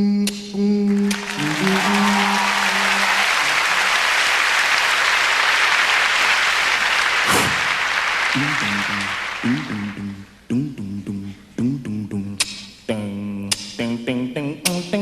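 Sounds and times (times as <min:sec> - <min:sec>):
person singing: 0:00.0 - 0:03.3, 0:08.4 - 0:15.0
audience applauding: 0:00.9 - 0:10.1.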